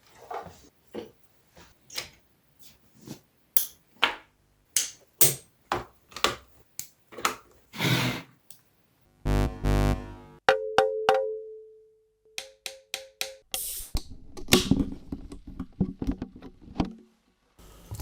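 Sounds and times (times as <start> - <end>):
loud buzzing tone: 9.1 - 10.4.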